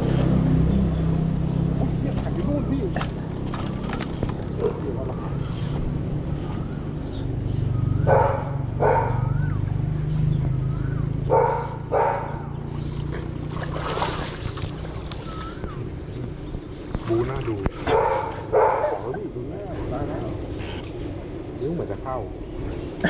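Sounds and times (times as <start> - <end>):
dog barking: 8.0 - 9.4, 11.2 - 12.6, 17.8 - 19.2.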